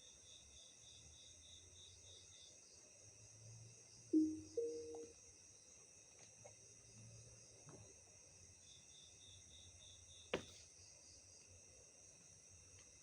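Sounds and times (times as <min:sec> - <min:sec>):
crickets chirping: 0:00.0 - 0:13.0
two-note electronic tone: 0:04.2 - 0:05.1.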